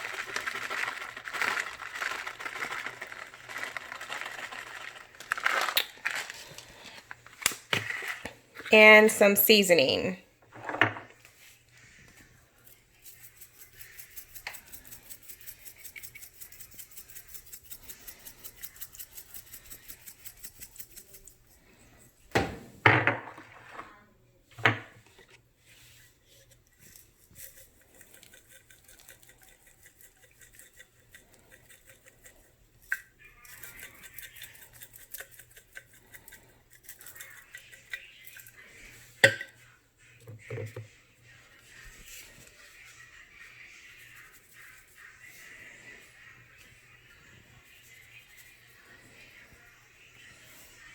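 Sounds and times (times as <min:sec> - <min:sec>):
seasoning shaker rattling: 0:00.0 - 0:06.4, 0:11.4 - 0:22.0, 0:25.8 - 0:39.5.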